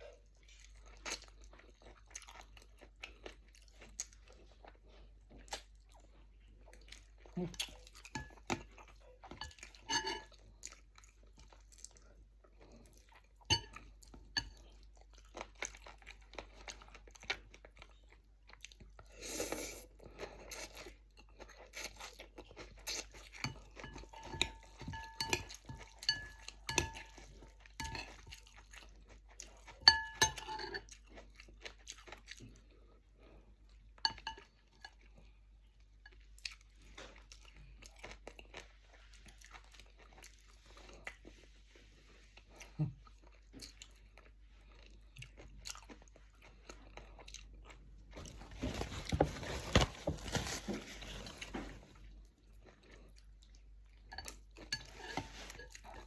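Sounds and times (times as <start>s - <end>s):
person chewing and crunching: 0.0s - 56.0s
cutlery clinking against bowl: 9.3s - 10.4s, 13.5s - 14.6s, 22.9s - 28.5s, 29.7s - 30.9s, 54.1s - 56.0s.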